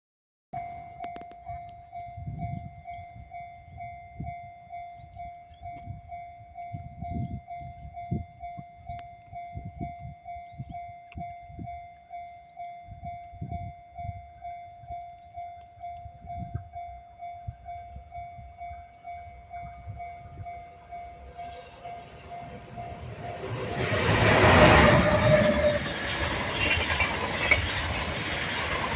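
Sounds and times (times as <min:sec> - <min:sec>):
electric locomotive approaching: 0:00.6 - 0:28.9
level-crossing alarm ringing: 0:09.5 - 0:28.9.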